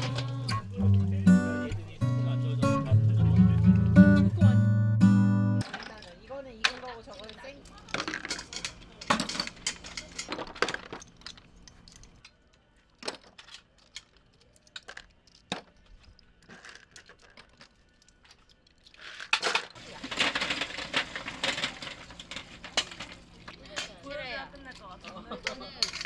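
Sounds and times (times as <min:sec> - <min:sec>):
clattering and scraping: 0:00.0 - 0:01.2, 0:05.6 - 0:12.2, 0:19.0 - 0:26.0
hard objects clinking and knocking: 0:05.6 - 0:26.0.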